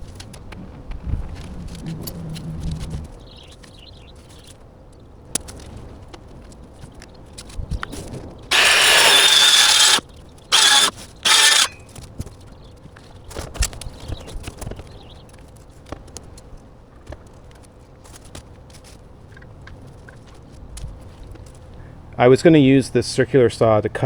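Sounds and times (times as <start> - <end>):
circular saw cutting foam board: 8.5 - 11.8.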